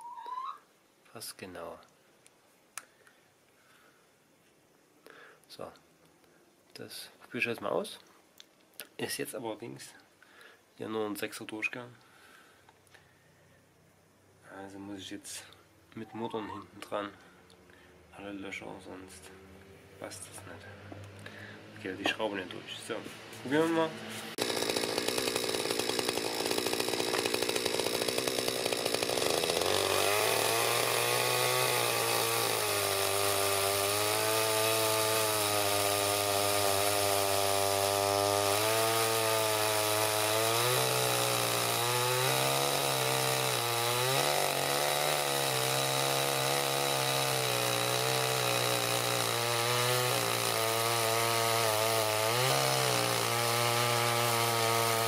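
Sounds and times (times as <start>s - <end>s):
chainsaw cutting wood: 23.5s - 55.0s.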